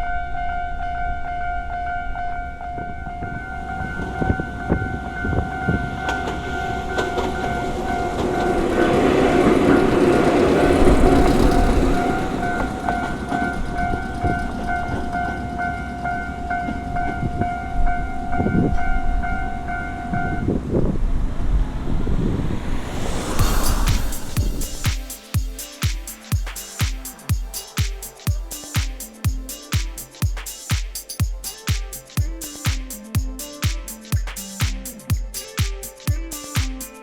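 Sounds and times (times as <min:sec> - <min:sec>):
level crossing warning bell: 0:00.0 - 0:20.6
train wheels clacking over joints: 0:05.8 - 0:17.4.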